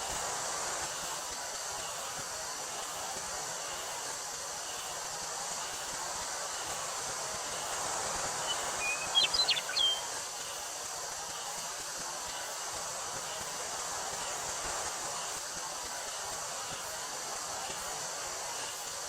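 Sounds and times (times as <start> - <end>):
cicadas droning: 0.0 - 19.0
bird chirping: 8.4 - 10.1.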